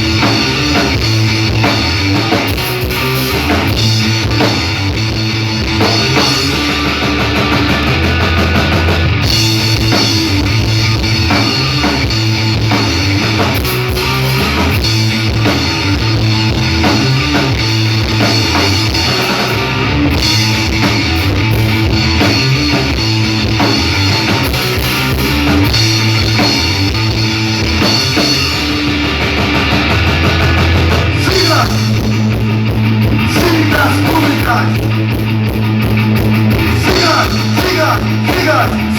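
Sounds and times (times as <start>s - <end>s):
rock band playing live: 0.0s - 38.9s.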